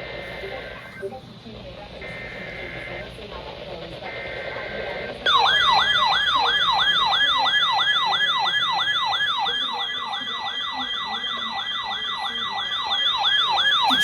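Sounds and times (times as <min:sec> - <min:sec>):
two-tone data buzz: 0:00.0 - 0:01.2
weather radio alert alarm warble: 0:00.0 - 0:01.2, 0:04.1 - 0:14.0.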